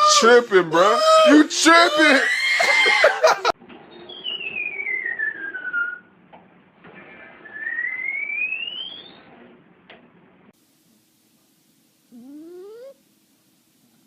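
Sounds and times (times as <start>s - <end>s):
sliding whistle tone: 3.9s - 6.1s, 7.0s - 9.3s.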